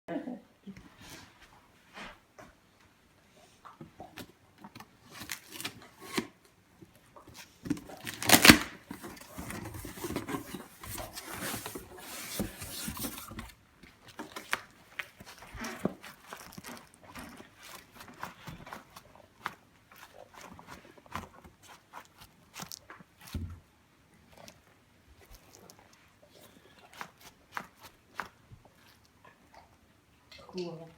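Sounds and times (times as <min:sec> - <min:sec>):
light crinkles and taps: 0:03.7 - 0:23.7, 0:24.4 - 0:29.2
packaging rustling: 0:05.0 - 0:06.3, 0:07.3 - 0:23.4
packaging tearing: 0:05.1 - 0:06.3, 0:07.4 - 0:13.5.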